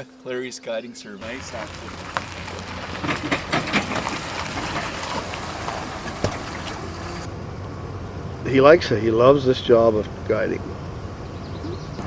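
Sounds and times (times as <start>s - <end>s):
water noise: 1.2s - 7.3s
boat motor running: 1.2s - 7.4s
light knocks and clatters: 1.3s - 6.9s.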